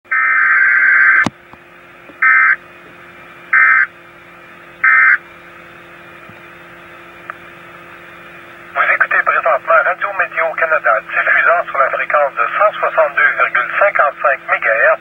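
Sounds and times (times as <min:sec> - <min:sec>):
buzzy two-tone data screeches: 0:00.1 - 0:01.3, 0:02.2 - 0:02.6, 0:03.5 - 0:03.9, 0:04.8 - 0:05.2
radio hiss: 0:00.1 - 0:01.4, 0:02.1 - 0:04.0, 0:04.8 - 0:15.0
faint hum: 0:00.1 - 0:15.0.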